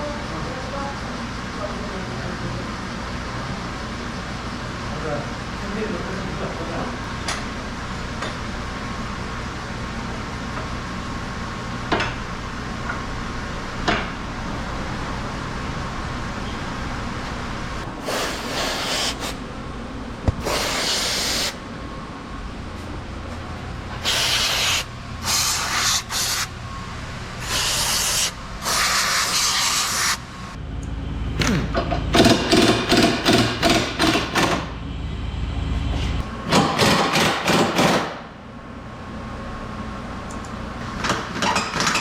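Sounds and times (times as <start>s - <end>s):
aerosol spray hissing bursts: 18.0s - 19.4s, 20.4s - 21.6s, 24.0s - 26.5s, 27.4s - 30.2s.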